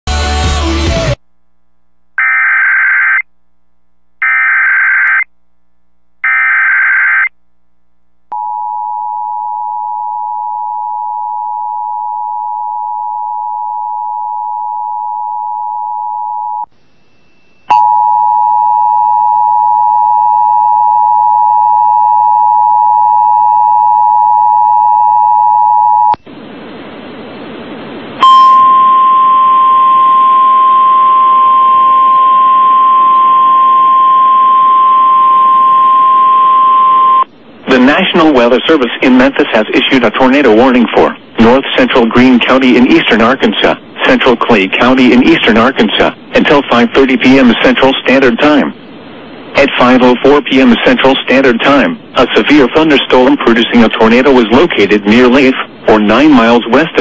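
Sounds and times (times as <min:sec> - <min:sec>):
low hum: 0:07.5 - 0:50.5
two-tone attention signal: 0:28.2 - 0:37.3
static hiss: 0:37.3 - 0:57.0.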